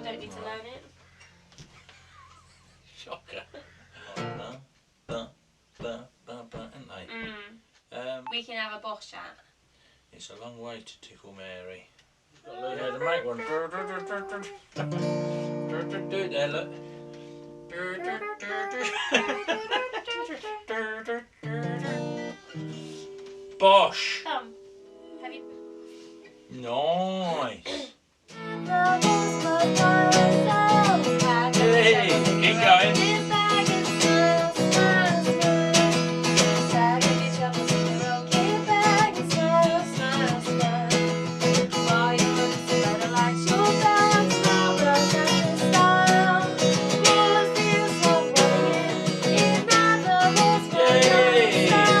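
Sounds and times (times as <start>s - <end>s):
strummed acoustic guitar: 4.1s - 4.5s, 12.8s - 18.3s, 21.4s - 24.7s, 28.3s - 52.0s
person singing: 12.5s - 14.7s, 17.9s - 23.0s, 28.3s - 52.0s.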